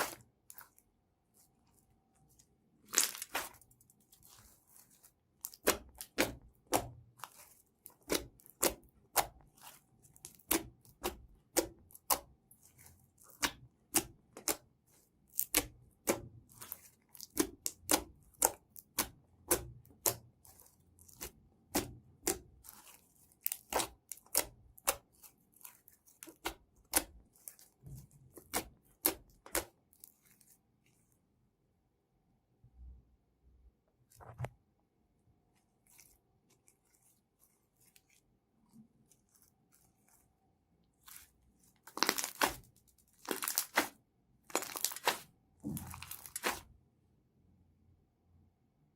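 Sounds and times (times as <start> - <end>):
slime crackling pops: 44.5 - 45.2.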